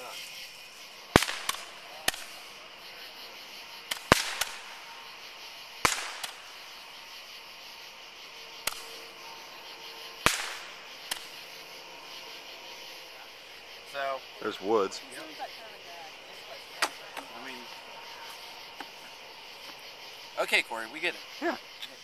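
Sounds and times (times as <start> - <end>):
fireworks bangs and pops: 0.0 - 2.6, 3.8 - 4.9, 5.7 - 6.8, 8.6 - 9.0, 10.2 - 11.4
fireworks crackling: 0.0 - 22.0.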